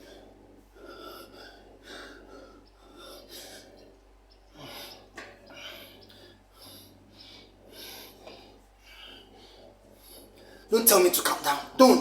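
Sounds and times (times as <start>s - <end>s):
man breathing hard: 0.0s - 10.7s
low electrical hum: 0.0s - 12.0s.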